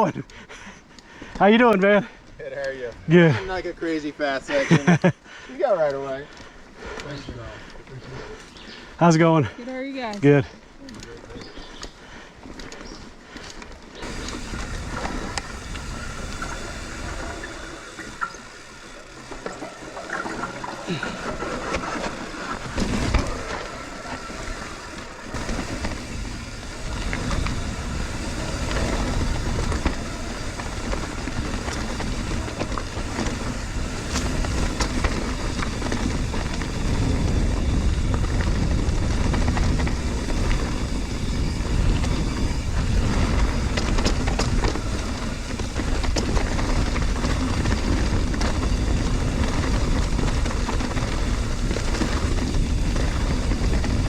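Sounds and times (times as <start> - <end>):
bike rattling clicks: 5.8 - 8.9, 10.0 - 54.0
tyres rolling over dirt and rock: 11.0 - 54.0
wind rushing over microphone: 14.0 - 54.0.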